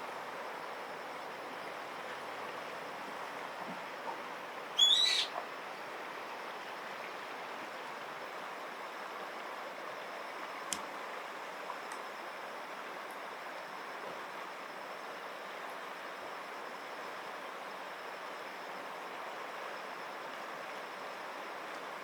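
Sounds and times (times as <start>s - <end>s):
background hiss: 4.6s - 5.9s
duckling peeping: 4.8s - 5.3s.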